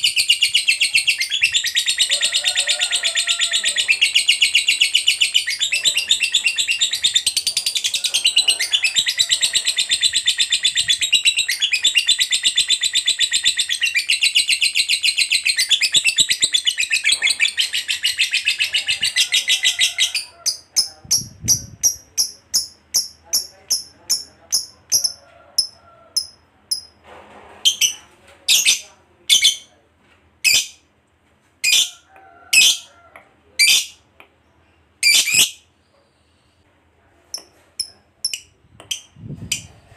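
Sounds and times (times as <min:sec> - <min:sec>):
lovebird chattering trill: 0:00.0 - 0:26.9, 0:35.0 - 0:35.6.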